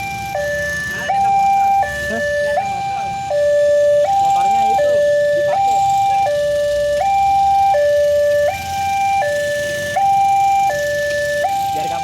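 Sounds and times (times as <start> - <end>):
two-tone crossing alarm: 0.0 - 12.0.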